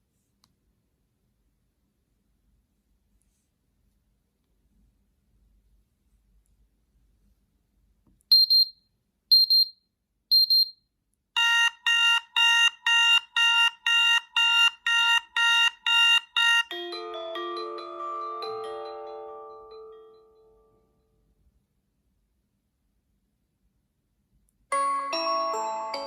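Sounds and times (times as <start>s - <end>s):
high double beeps: 11.4s - 16.7s
chord-like beeps: 11.4s - 17.0s.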